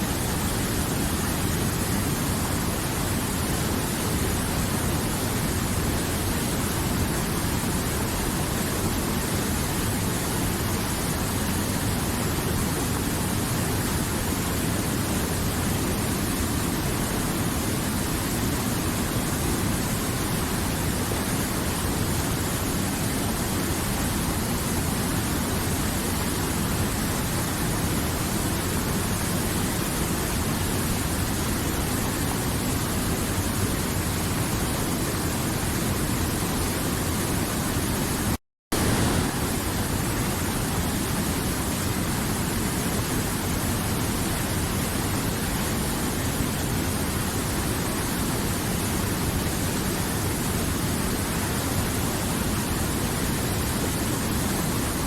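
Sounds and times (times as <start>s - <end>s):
river water flowing: 38.8s - 55.0s.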